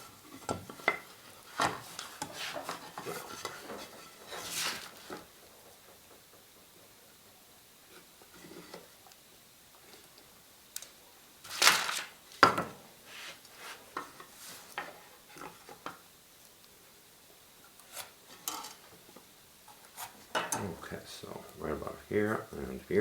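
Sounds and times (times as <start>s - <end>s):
wooden pieces and tools handled: 0.0s - 6.9s
scrape on workbench: 1.6s - 5.2s, 13.1s - 14.8s.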